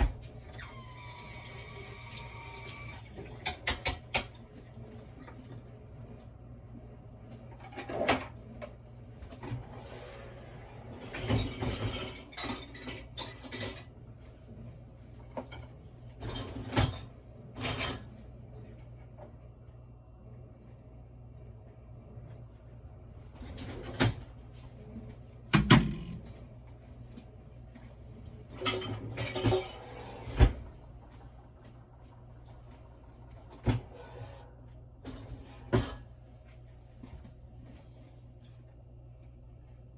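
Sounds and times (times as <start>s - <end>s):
low steady hum: 0.0s - 39.9s
kitchen items clattering: 28.4s - 32.2s.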